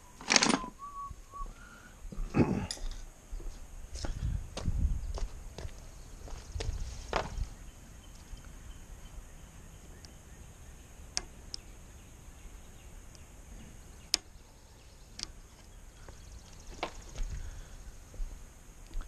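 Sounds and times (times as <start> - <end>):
sharp clicks: 14.1 - 14.4, 15.1 - 15.4.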